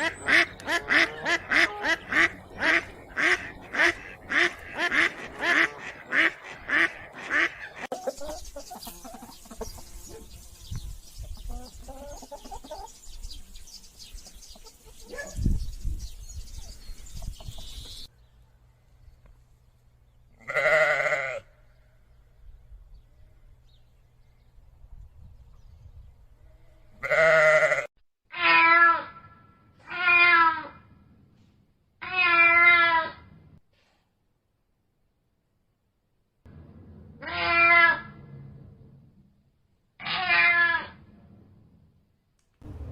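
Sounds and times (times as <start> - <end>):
duck quacking: 0.0 - 8.3
livestock bleating: 20.4 - 21.6, 26.9 - 29.1.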